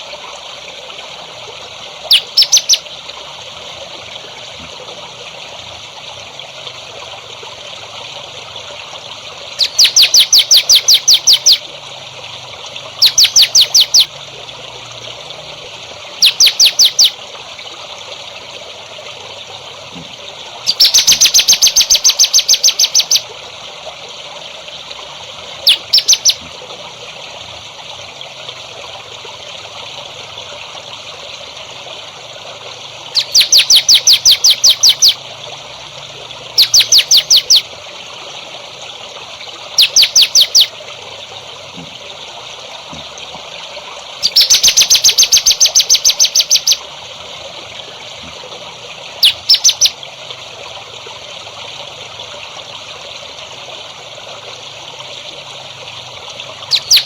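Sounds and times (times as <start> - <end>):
running water trickling: 0.0 - 57.0
songbird calling sharp notes: 2.1 - 2.8, 9.6 - 11.6, 13.0 - 14.1, 16.2 - 17.2, 20.7 - 23.3, 25.6 - 26.4, 33.2 - 35.2, 36.6 - 37.7, 39.8 - 40.7, 44.2 - 46.8, 49.2 - 50.0, 56.7 - 57.0.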